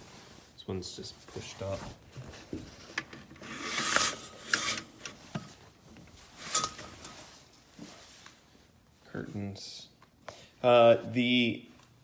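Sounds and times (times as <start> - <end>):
rubbing and scraping: 1.2 - 8.6.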